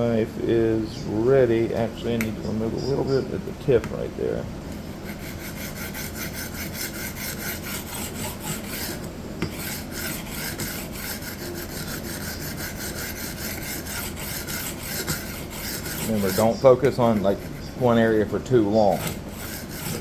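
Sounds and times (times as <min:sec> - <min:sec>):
knife scraping on sharpening plate: 0:05.0 - 0:18.3, 0:18.9 - 0:20.0.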